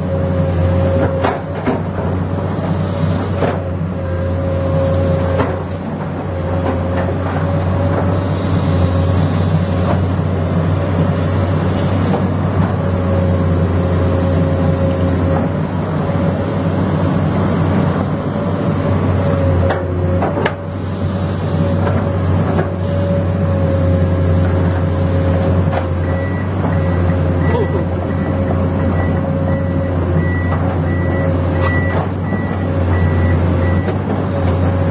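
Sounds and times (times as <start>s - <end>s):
excavator diesel engine running: 0.0s - 34.9s
reversing alarm beeping: 26.0s - 34.0s.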